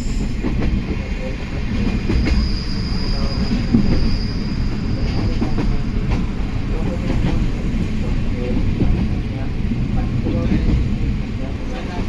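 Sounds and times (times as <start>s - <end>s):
train running gear rumble: 0.0s - 12.0s
high wheel squeal: 2.0s - 6.0s.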